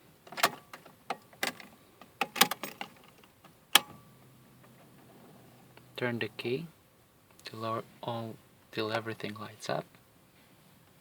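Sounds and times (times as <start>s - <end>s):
car keys jangling and clicking: 1.4s - 4.0s.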